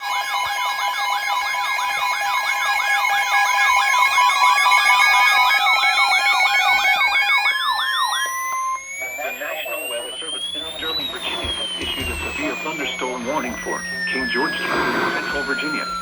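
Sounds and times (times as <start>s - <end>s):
siren-like warble: 1.0s - 16.0s
steady alert tones: 9.0s - 16.0s
slowly rising tone: 10.4s - 16.0s.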